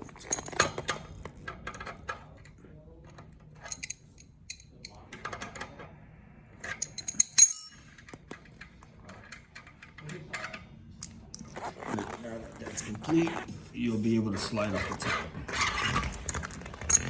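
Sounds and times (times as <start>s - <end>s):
metal tool and bolt clinking: 0.2s - 1.0s, 3.6s - 5.0s, 6.7s - 8.2s, 16.0s - 17.0s.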